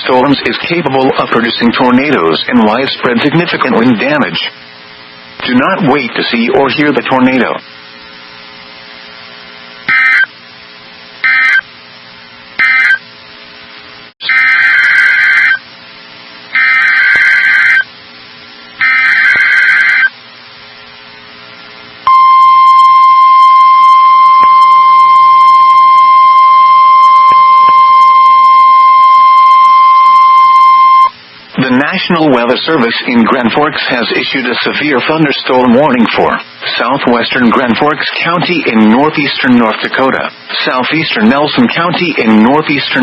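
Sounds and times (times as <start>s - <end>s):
electrical hum: 0.0s - 43.0s
digital data bursts: 9.9s - 10.3s, 11.2s - 11.6s, 12.6s - 13.0s, 14.2s - 15.6s, 18.8s - 20.2s
steady warning alarm tone: 9.9s - 10.3s, 11.2s - 11.7s, 12.6s - 13.1s, 14.2s - 15.7s, 16.5s - 17.9s, 18.8s - 20.2s, 22.1s - 31.2s.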